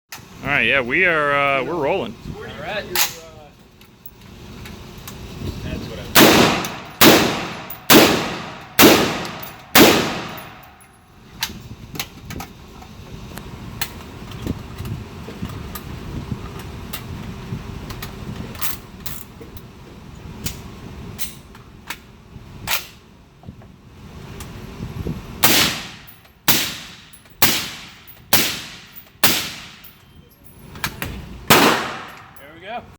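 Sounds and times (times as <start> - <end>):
suppressed rifle shots: 6.2 - 10.6, 31.5 - 32.2.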